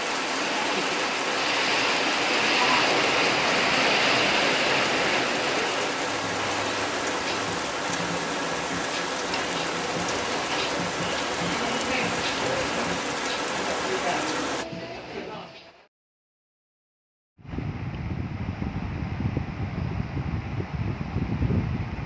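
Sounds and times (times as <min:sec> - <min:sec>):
steady rain falling: 0:00.0 - 0:14.7.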